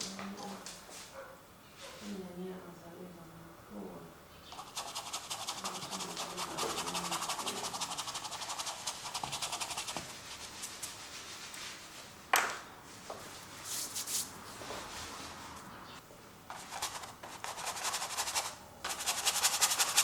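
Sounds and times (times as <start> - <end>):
paintbrush scrubbing on canvas: 4.5 - 12.0, 13.6 - 15.4, 16.5 - 20.0.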